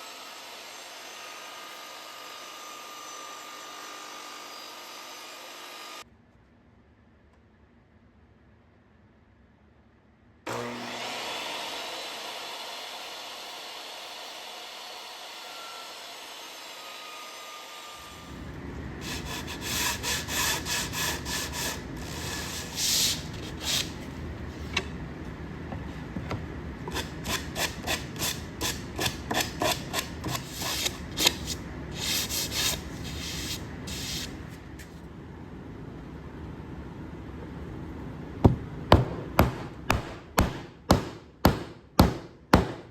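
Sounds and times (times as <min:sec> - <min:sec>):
rubbing strokes on wood: 0:19.0 - 0:24.0, 0:26.9 - 0:34.9.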